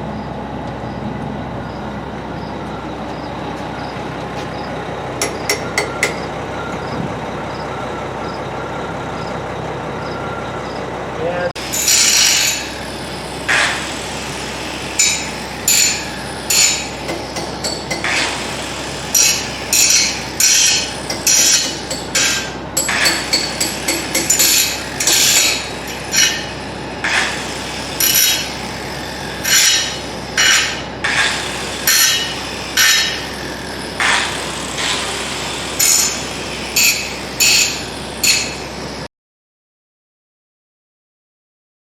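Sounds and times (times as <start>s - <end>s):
ringing metallic knocks: 5.2s - 7.0s, 11.7s - 12.8s, 15.0s - 18.4s, 19.1s - 27.4s, 28.0s - 28.6s, 29.4s - 35.1s, 35.8s - 38.8s.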